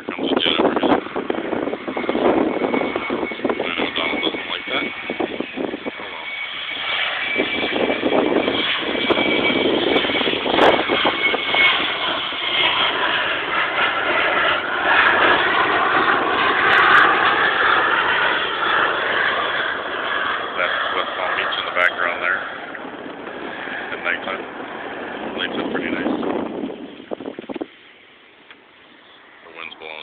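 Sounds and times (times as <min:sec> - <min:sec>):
jet aircraft passing overhead: 0:00.0 - 0:30.0.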